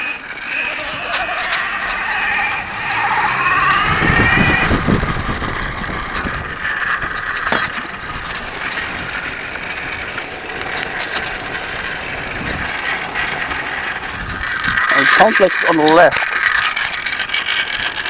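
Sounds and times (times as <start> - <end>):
drivetrain ticking and rattling: 0.0 - 16.6
electric bike motor whine: 0.0 - 18.0
metal pinging: 0.0 - 18.0.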